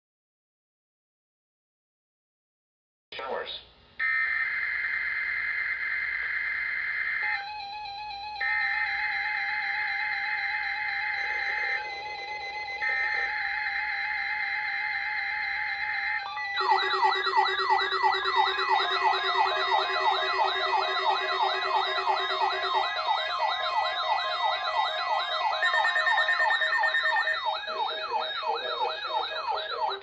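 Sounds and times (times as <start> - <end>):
electronic alert sirens wailing: 4.0 - 30.0
steady beeping tones: 8.1 - 30.0.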